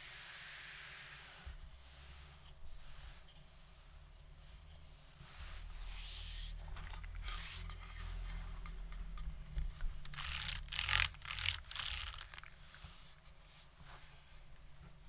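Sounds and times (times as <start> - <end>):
soft rustling hiss: 0.0 - 15.0
mechanical keyboard typing: 10.1 - 12.6.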